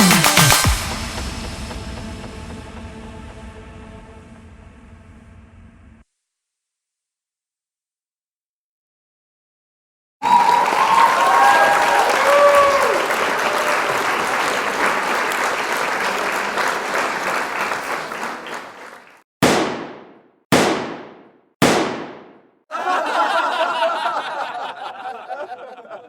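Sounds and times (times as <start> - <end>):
applause: 10.2 - 19.2
person chuckling: 22.7 - 26.0.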